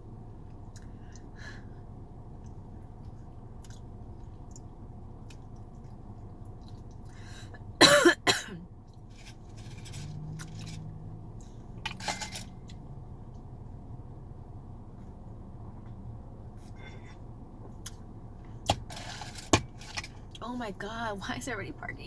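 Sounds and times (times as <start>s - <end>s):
faint chewing clicks: 2.4s - 7.2s.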